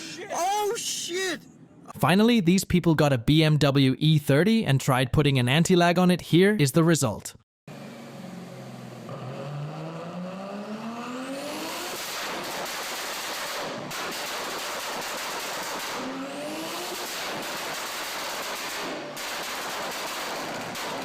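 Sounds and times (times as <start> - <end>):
car engine revving: 9.0 - 12.2.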